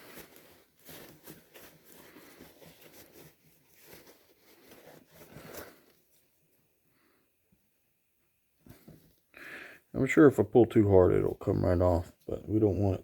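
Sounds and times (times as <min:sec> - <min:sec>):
hand rubbing vacuum hose: 0:00.0 - 0:06.2.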